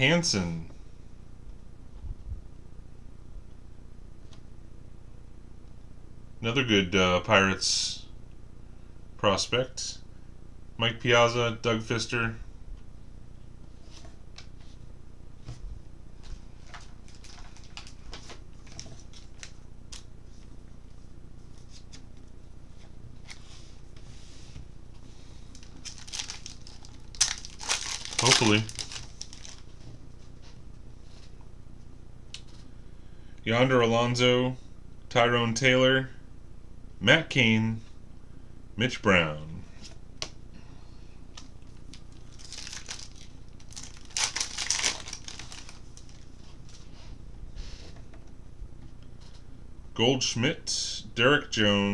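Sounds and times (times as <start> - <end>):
wrapper crinkling: 16.6 - 20.0, 25.5 - 29.8, 41.6 - 46.4
soft brushing: 22.6 - 25.4.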